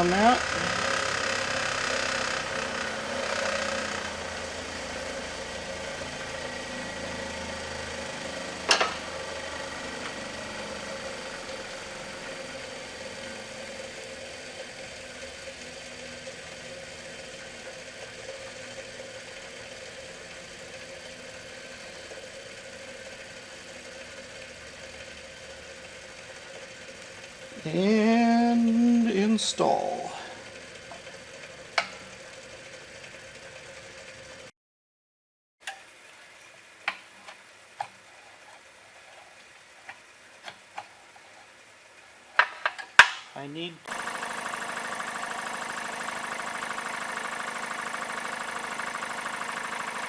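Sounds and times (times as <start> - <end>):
machine hum: 0.0 - 14.8, 43.4 - 50.0.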